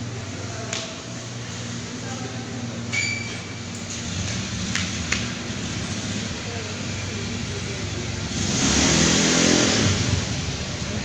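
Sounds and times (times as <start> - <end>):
vehicle engine passing: 3.9 - 11.0.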